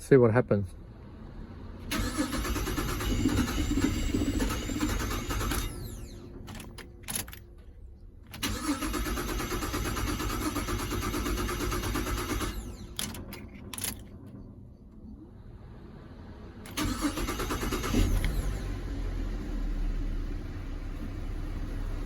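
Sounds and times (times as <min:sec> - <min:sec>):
starter motor cranking engine: 0:01.8 - 0:07.5, 0:08.3 - 0:14.1, 0:16.7 - 0:18.9.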